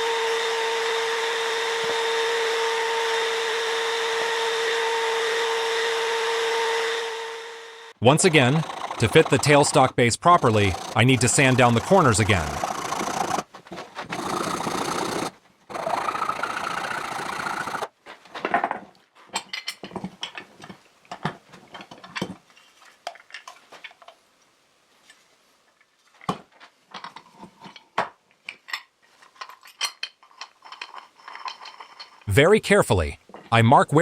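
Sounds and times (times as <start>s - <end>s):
power sander grinding wood: 0.0s - 17.9s.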